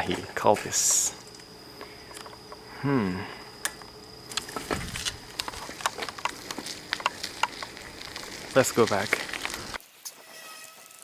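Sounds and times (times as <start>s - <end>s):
footsteps on pavement: 0.0s - 1.6s, 4.2s - 9.8s
person humming: 2.7s - 3.4s.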